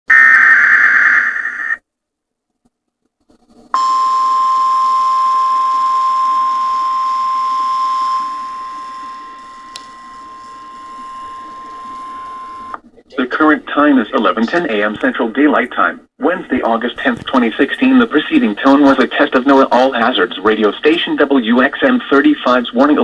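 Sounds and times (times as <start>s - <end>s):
steady high alarm tone: 0.1s - 1.8s, 3.8s - 12.8s.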